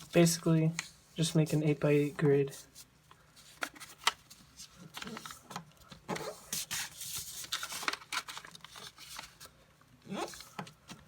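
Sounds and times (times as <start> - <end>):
paper rubbing and crinkling: 0.0 - 9.5, 10.1 - 10.6
sharp paper crack: 3.6 - 9.5.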